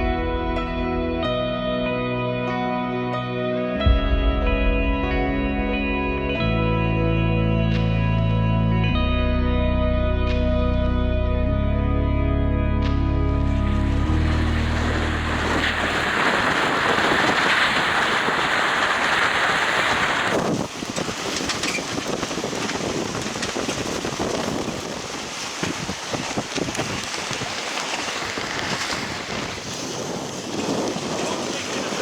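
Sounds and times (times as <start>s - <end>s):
wind buffeting microphone: 13.5s - 32.0s.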